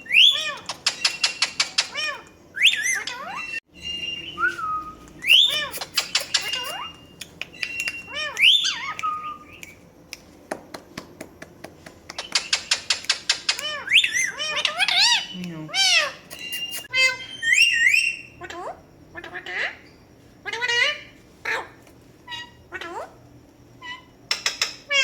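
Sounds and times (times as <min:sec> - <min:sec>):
parrot whistling calls: 0:00.0 - 0:09.8, 0:12.2 - 0:18.4.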